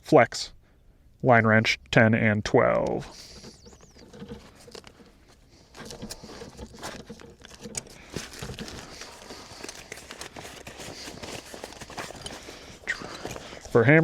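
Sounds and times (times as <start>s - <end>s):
small metal clicks and knocks: 3.2s - 12.5s
fabric rustling: 3.2s - 14.0s.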